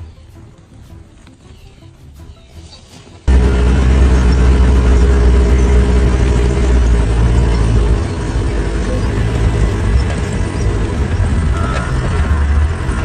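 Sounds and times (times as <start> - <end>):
vehicle engine idling: 3.3 - 13.0.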